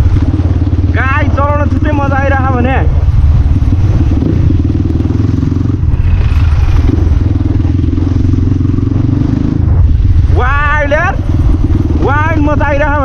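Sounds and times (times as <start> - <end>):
loud motorcycle exhaust: 0.0 - 13.0.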